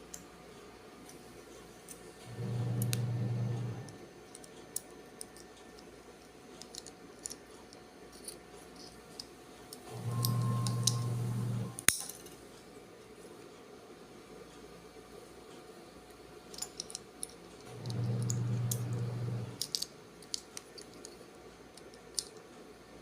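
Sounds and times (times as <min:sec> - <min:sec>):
steady low hum: 0:00.0 - 0:04.4, 0:09.0 - 0:16.5, 0:17.6 - 0:20.3
plastic switch parts clicking: 0:19.6 - 0:21.0.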